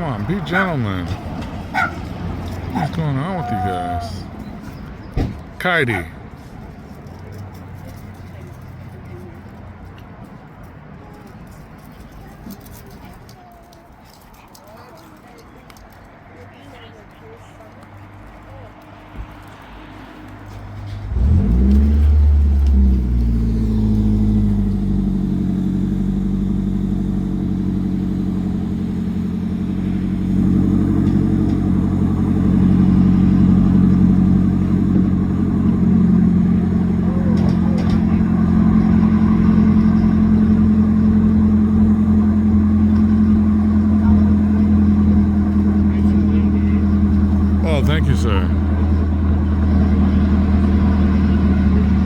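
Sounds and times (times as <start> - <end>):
engine starting and revving: 20.9 - 26.6.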